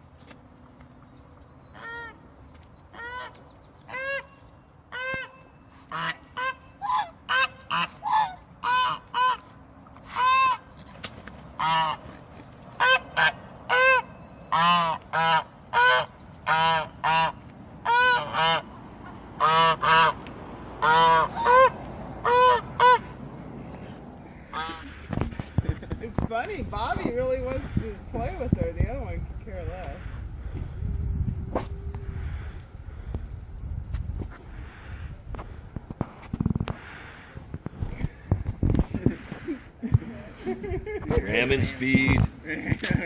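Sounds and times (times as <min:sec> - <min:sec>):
goose honking: 0:01.8 - 0:02.2, 0:02.9 - 0:10.9, 0:11.6 - 0:18.8, 0:19.4 - 0:20.2, 0:20.8 - 0:23.2, 0:23.8 - 0:25.0.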